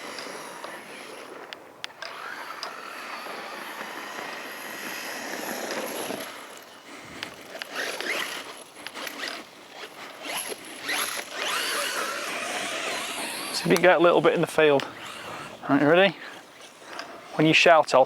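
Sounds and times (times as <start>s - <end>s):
small electric motor whining: 0.0s - 17.4s
wheels scraping over ground: 0.0s - 18.0s.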